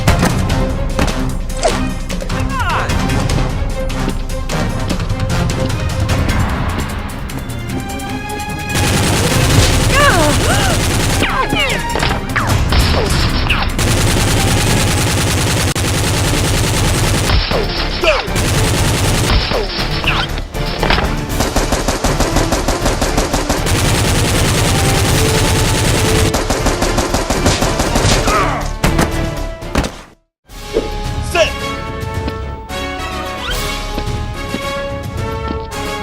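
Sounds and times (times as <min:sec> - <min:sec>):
rapid automatic gunfire: 0:08.7 - 0:11.4, 0:13.7 - 0:20.0, 0:21.3 - 0:28.4.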